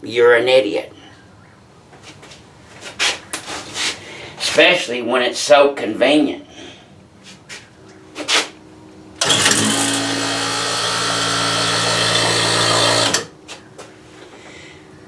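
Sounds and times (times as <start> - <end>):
electric vacuum pump humming: 9.2 - 13.4.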